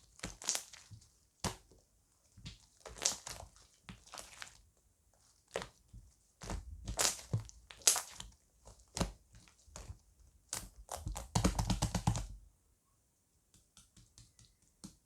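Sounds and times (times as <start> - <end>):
slime being squished by hand: 0.0 - 1.7, 2.4 - 4.6, 6.4 - 12.3.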